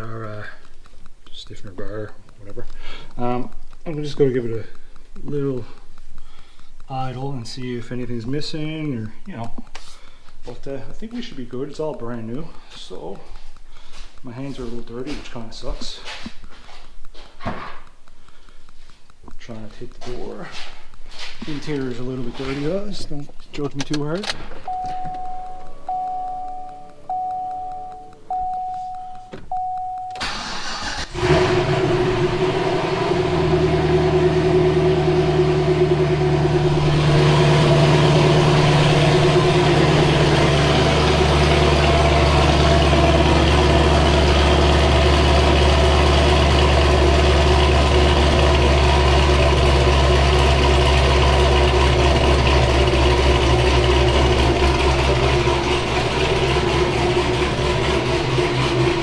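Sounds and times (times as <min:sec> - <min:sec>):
car engine starting and idling: 0:00.0 - 0:16.6, 0:21.2 - 0:59.0
car warning chime: 0:23.6 - 0:31.4, 0:34.4 - 0:51.0.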